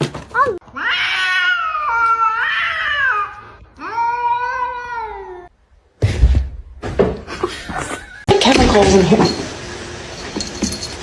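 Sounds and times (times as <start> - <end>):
cat meowing: 0.7 - 5.5
rustling: 10.1 - 11.0.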